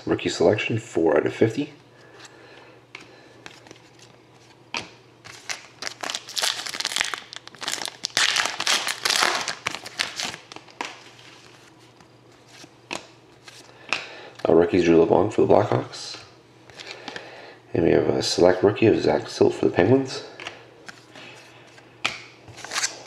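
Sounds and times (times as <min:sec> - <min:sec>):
card pack wrapper tearing: 0:05.3 - 0:11.0
wrapper crinkling: 0:05.3 - 0:11.7.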